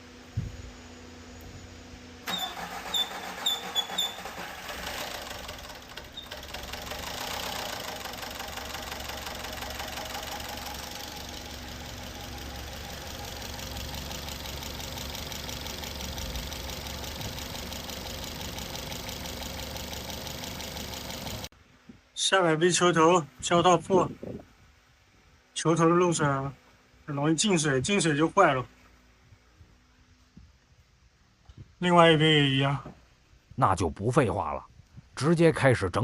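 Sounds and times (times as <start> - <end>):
engine chirps: 1.0 - 21.5
car engine starting and idling: 2.1 - 21.5.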